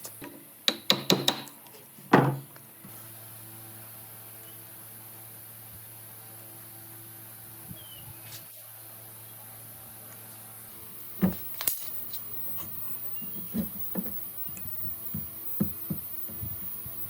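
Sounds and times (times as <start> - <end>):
steady low hum: 2.6 - 17.0
wooden knocks and clunks: 13.2 - 16.6.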